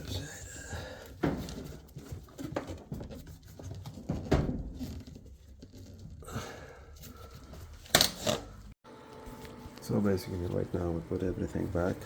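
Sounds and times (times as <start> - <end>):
plastic and metal scraping: 1.2 - 6.2.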